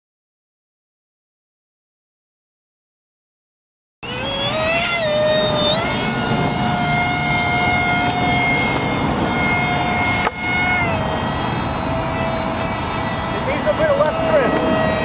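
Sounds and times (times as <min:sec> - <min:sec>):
model airplane motor whining: 0:04.0 - 0:15.0.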